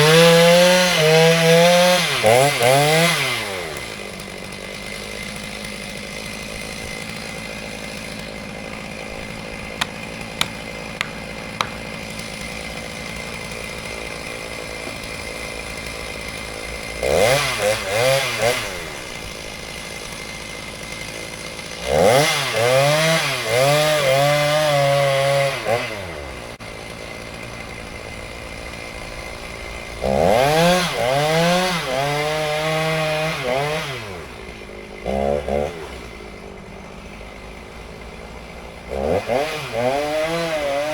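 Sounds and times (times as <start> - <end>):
chainsaw cutting wood: 0.0 - 40.9
sharp clicks: 9.7 - 12.0.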